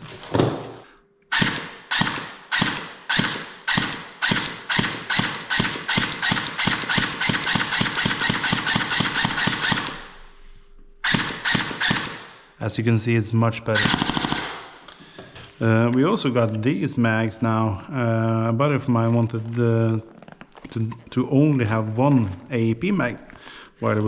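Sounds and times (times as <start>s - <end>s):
airsoft pistol shots clicking: 1.3s - 10.1s, 11.1s - 12.4s.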